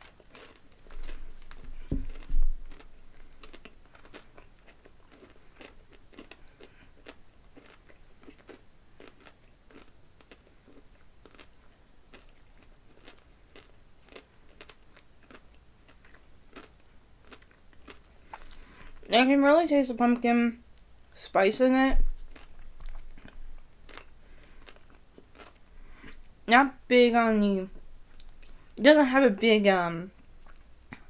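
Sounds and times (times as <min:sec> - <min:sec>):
chewing and crunching candy: 0:00.0 - 0:19.1, 0:22.1 - 0:26.3, 0:30.1 - 0:31.0.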